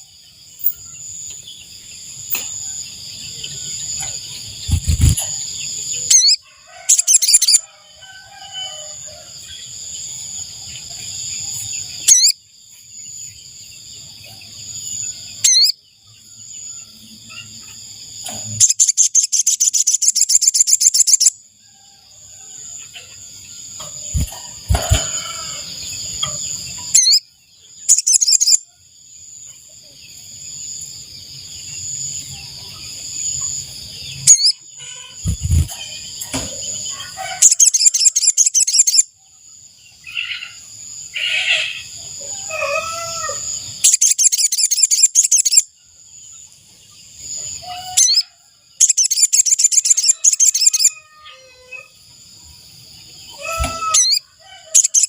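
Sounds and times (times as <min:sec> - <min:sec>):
bird chirping trills: 0:00.0 - 0:07.6, 0:09.4 - 0:21.5, 0:22.9 - 0:41.9, 0:43.1 - 0:52.0, 0:53.0 - 0:55.0
lower bird calls: 0:02.2 - 0:07.6, 0:11.5 - 0:12.4, 0:15.4 - 0:15.8, 0:23.9 - 0:27.2, 0:34.1 - 0:36.0, 0:53.3 - 0:55.0.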